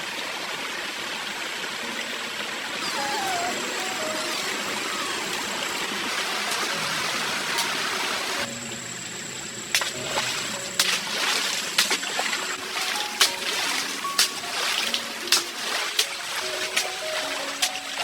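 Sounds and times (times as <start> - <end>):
stream water rushing: 0.0 - 18.0
sharp water splashes: 9.7 - 18.0.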